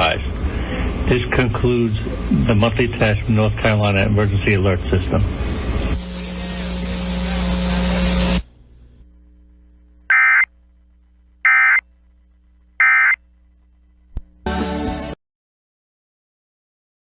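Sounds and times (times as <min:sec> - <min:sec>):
steady hiss with low hum: 0:00.0 - 0:14.5
buzzy digital data bursts: 0:10.1 - 0:10.5.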